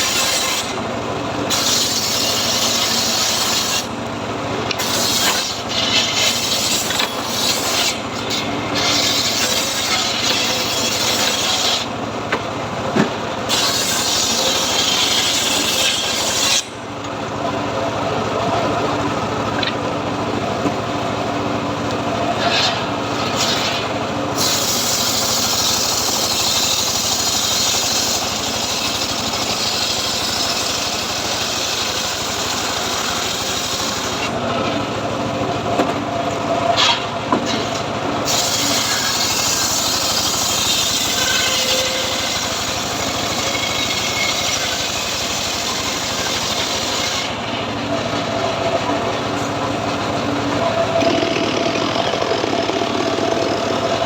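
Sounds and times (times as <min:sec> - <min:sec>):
engine-driven sawmill sawing wood: 0:00.0 - 0:54.0.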